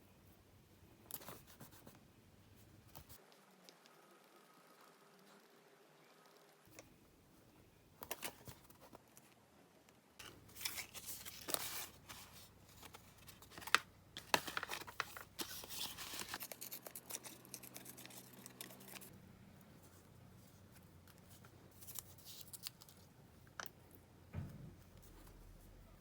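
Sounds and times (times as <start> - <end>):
paper rustling: 10.2 - 19.1
scissors snipping paper: 15.5 - 19.1.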